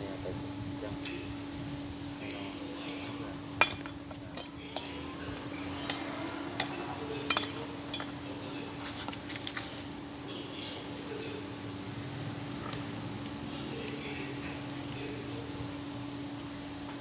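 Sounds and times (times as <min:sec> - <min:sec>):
steady low hum: 0:00.0 - 0:17.0
metal objects clinking: 0:02.8 - 0:08.2.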